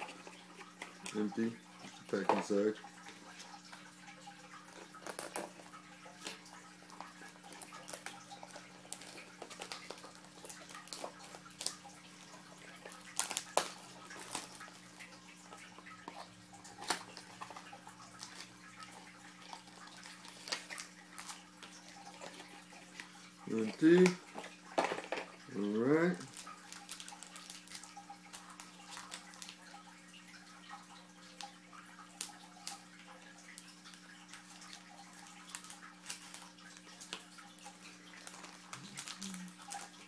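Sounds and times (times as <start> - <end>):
packaging crinkling: 4.6 - 25.4, 26.2 - 29.8, 33.5 - 40.0.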